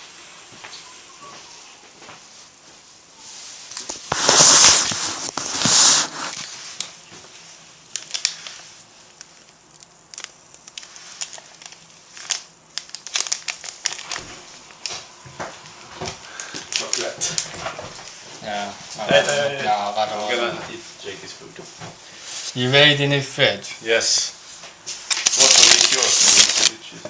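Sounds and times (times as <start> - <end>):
plastic packaging crinkling: 3.7 - 7.0, 7.8 - 15.1, 16.0 - 18.2, 24.9 - 26.8.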